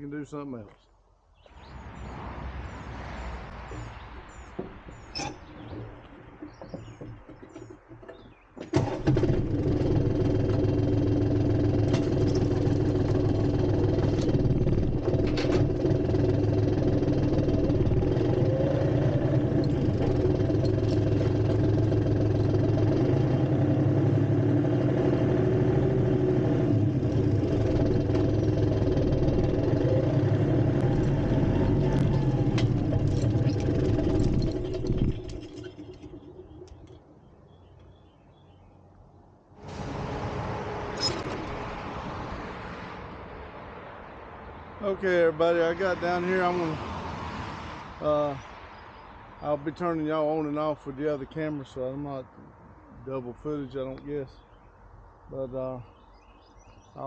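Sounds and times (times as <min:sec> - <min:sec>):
vehicle engine starting and running: 0:01.6 - 0:38.0, 0:39.6 - 0:43.3.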